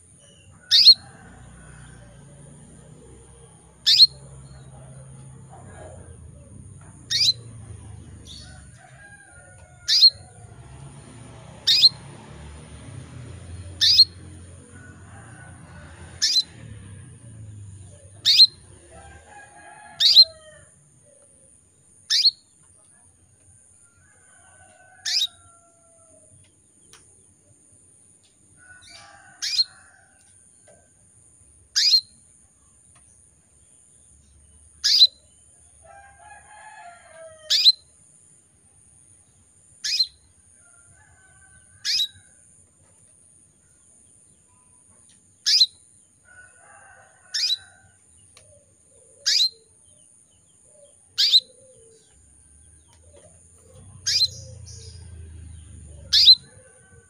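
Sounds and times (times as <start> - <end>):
soft bird twittering: 0.3 - 1.0, 7.1 - 7.4, 13.8 - 14.2, 18.2 - 18.6, 51.2 - 52.0, 53.8 - 55.0, 56.0 - 56.5
canary call notes: 0.3 - 1.1, 3.8 - 4.6, 7.0 - 7.6, 9.8 - 10.3, 11.6 - 12.1, 13.7 - 14.2, 16.2 - 16.6, 18.0 - 18.8, 20.0 - 20.4, 22.0 - 22.5, 25.0 - 25.4, 28.8 - 29.7, 31.8 - 32.2, 34.8 - 35.2, 37.5 - 37.9, 39.8 - 40.2, 41.8 - 42.2, 45.4 - 45.8, 47.3 - 47.6, 49.1 - 49.8, 51.2 - 52.1, 53.8 - 56.5.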